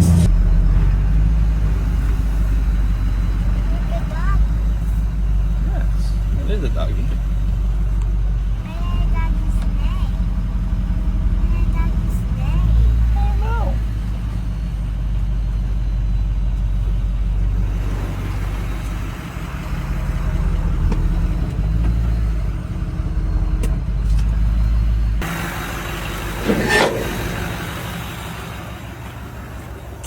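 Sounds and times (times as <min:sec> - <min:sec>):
diesel truck engine rumbling: 0:00.0 - 0:30.0
short rising squeal: 0:26.2 - 0:27.8.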